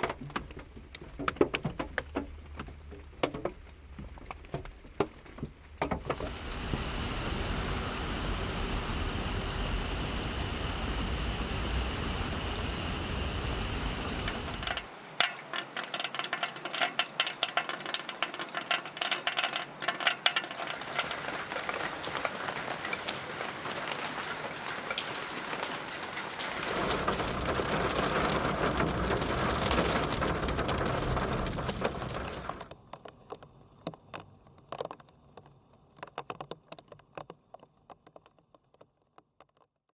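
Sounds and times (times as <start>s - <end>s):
steady rain: 0.3s - 37.3s
drops hitting a hard surface: 14.2s - 22.4s.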